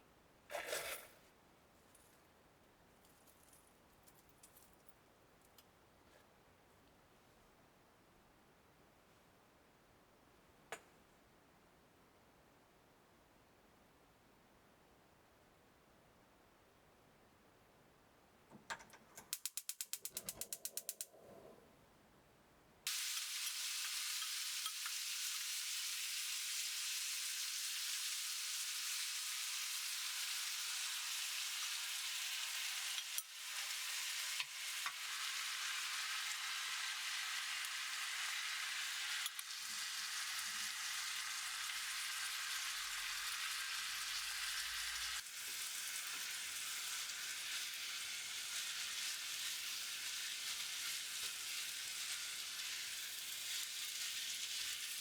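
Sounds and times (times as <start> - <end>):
rice sizzling in a pan: 22.9 - 55.0.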